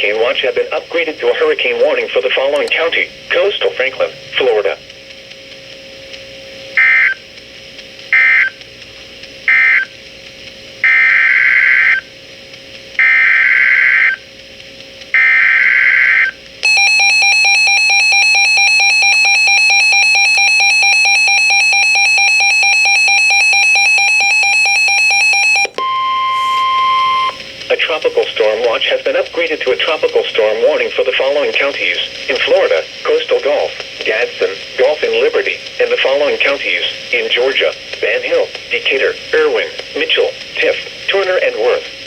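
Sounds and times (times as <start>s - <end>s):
harsh two-tone attention signal: 16.7s - 27.4s
short data bursts: 18.7s - 30.1s
single steady tone: 25.5s - 27.4s.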